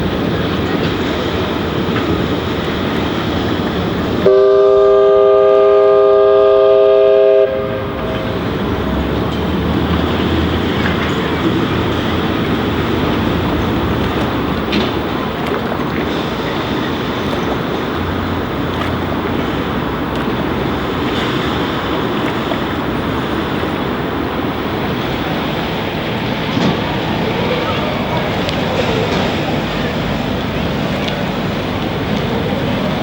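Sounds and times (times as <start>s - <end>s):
steam whistle blast: 4.2s - 8.0s
rushing background noise: 8.1s - 33.0s.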